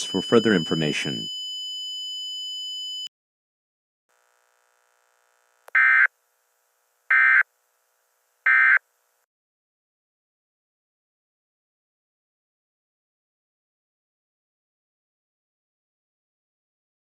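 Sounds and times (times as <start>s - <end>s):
steady high electronic tone: 0.0s - 1.3s.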